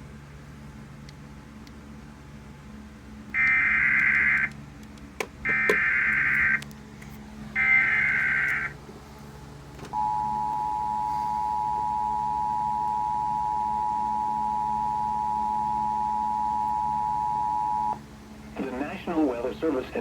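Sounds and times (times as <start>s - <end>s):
two-tone attention signal: 10.0s - 18.0s.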